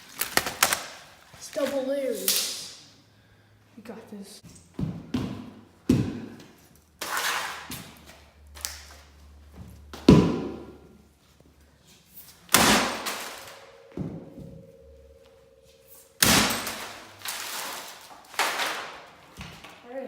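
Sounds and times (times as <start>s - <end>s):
laptop screen breaking apart: 16.2s - 19.1s.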